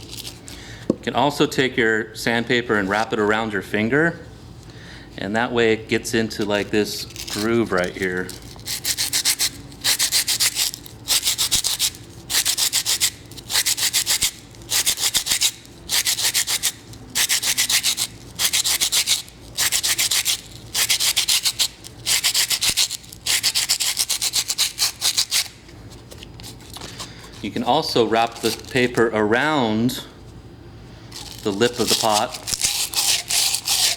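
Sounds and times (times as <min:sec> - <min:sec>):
sandpaper rubbing clay pot: 0:06.4 - 0:29.1, 0:31.1 - 0:33.9.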